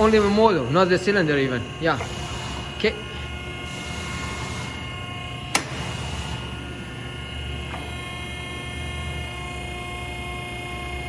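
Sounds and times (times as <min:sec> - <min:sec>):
hydraulic power unit humming: 0:00.0 - 0:11.0
sharp metallic click: 0:05.5 - 0:05.8.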